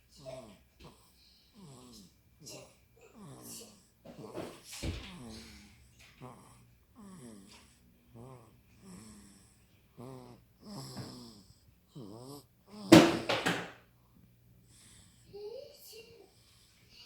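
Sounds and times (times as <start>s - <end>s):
baby snoring: 0.2s - 5.4s, 6.1s - 12.9s.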